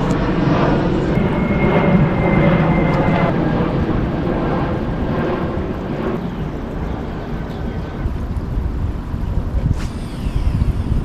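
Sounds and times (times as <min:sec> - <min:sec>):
airplane engine rumble: 0:00.0 - 0:11.0
thin high whine: 0:01.1 - 0:03.3, 0:09.7 - 0:11.0.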